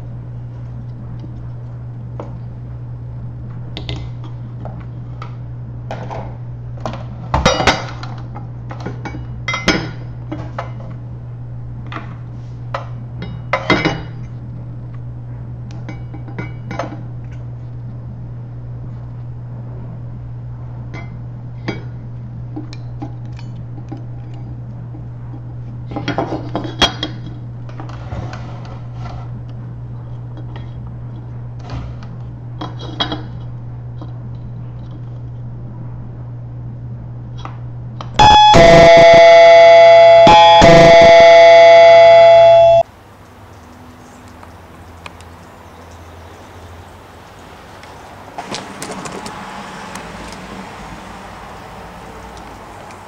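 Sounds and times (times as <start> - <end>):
steady low hum: 0.0 - 53.0
clinks and clatter of dishes: 13.2 - 14.2.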